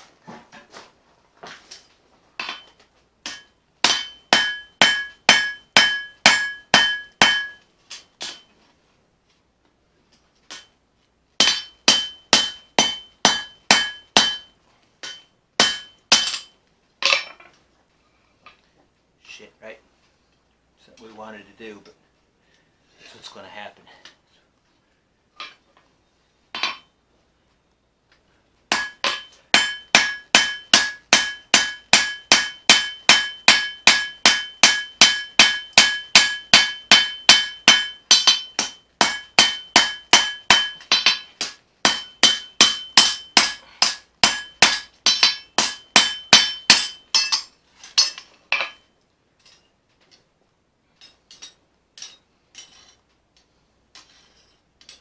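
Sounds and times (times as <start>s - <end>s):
hammer forging on anvil: 2.4s - 8.5s, 11.4s - 17.4s, 26.5s - 26.9s, 28.7s - 50.2s, 51.0s - 53.0s, 53.9s - 55.0s.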